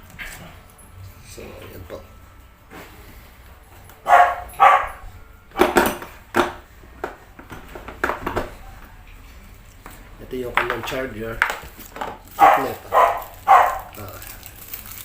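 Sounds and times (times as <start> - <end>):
dog barking: 4.0 - 5.0, 12.4 - 14.0.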